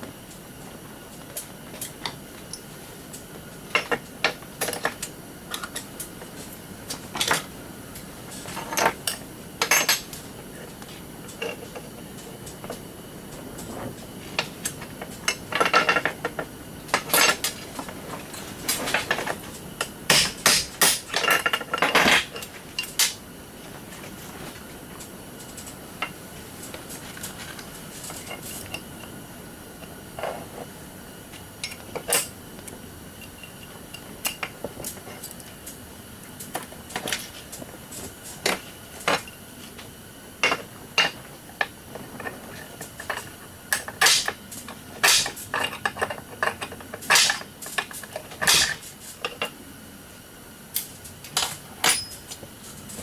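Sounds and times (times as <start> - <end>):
tools and metal parts clinking: 8.4 - 10.2, 14.4 - 23.2, 42.0 - 49.5, 50.8 - 53.0.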